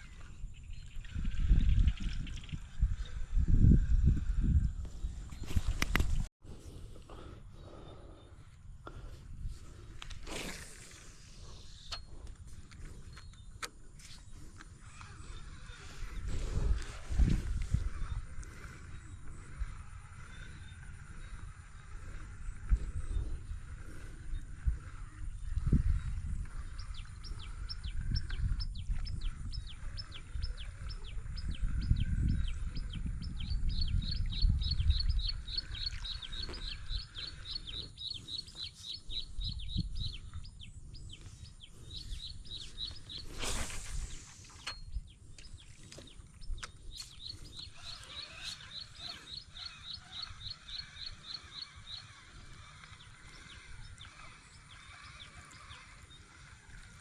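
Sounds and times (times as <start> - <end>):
bird chirping: 25.9 - 56.4.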